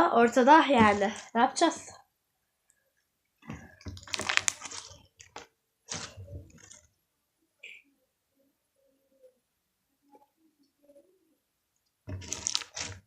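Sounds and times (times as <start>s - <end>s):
slime squishing crackles: 0.1s - 2.0s, 3.4s - 6.9s, 12.1s - 13.0s.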